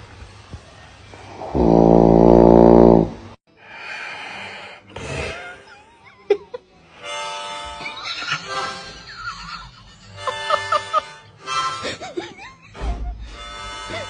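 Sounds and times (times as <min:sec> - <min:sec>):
loud buzzing snore: 0:01.2 - 0:03.4.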